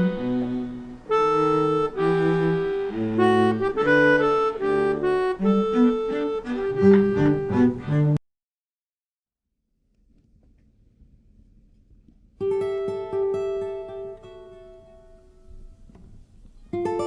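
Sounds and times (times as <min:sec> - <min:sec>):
accordion melody with bass: 0:00.0 - 0:08.2, 0:12.4 - 0:15.8, 0:16.8 - 0:17.0.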